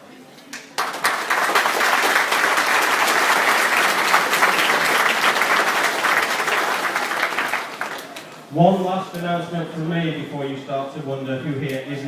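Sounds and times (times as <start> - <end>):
audience applauding: 0.6 - 8.5.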